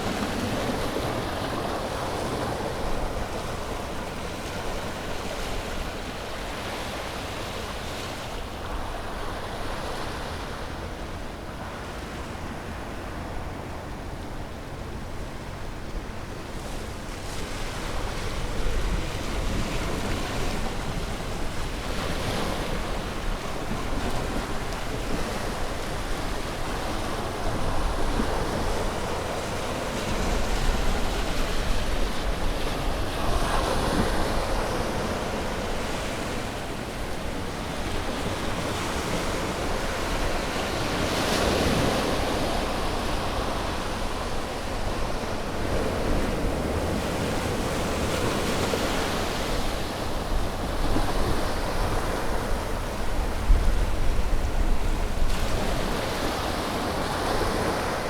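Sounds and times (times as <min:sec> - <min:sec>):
sea waves breaking on shore: 0:00.0 - 0:58.0
wind rumble on microphone: 0:08.4 - 0:58.0.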